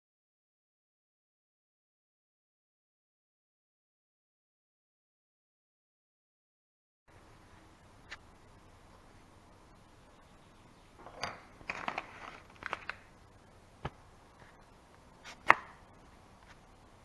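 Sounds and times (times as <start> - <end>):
small knocks and clatters: 11.0 - 13.0.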